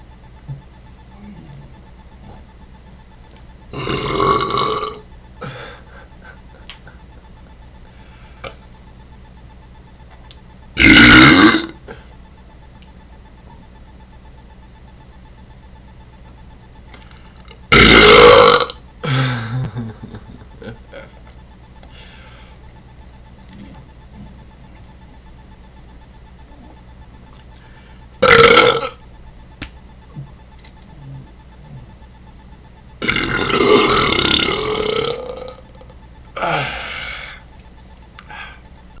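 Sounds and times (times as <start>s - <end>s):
person belching: 3.7s - 5.0s, 10.8s - 11.8s, 17.7s - 19.2s, 28.2s - 29.0s, 33.0s - 35.6s
person burping loudly: 3.7s - 5.0s, 10.8s - 11.9s, 17.7s - 19.3s, 28.2s - 29.0s, 33.0s - 35.6s.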